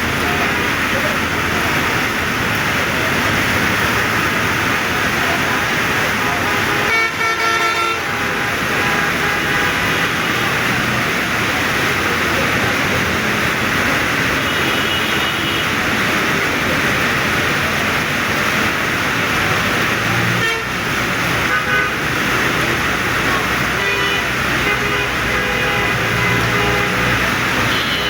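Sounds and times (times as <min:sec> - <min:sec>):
heavy rain: 0:00.0 - 0:28.0
road traffic: 0:00.0 - 0:28.0
car horn toots: 0:06.6 - 0:10.3, 0:14.4 - 0:15.7, 0:20.4 - 0:20.7, 0:23.8 - 0:28.0.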